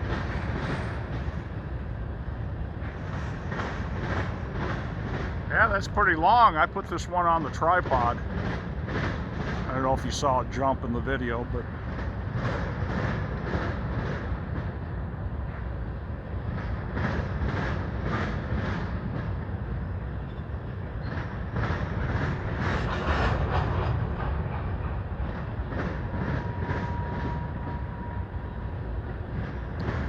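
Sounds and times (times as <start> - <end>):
freight train rumbling past: 0.0 - 30.0
train wheel clicks: 29.3 - 30.0.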